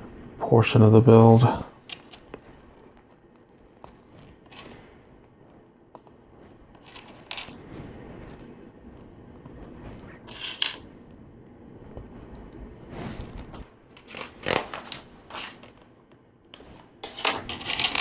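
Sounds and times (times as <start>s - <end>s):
plastic pieces clicking together: 17.0s - 18.0s.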